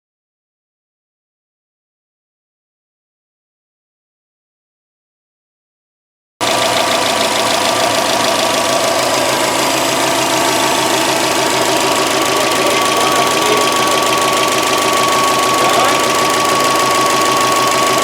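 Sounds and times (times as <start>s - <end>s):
car engine idling: 6.4s - 18.0s
rapid ticking: 6.4s - 18.0s
high whine: 6.5s - 18.0s.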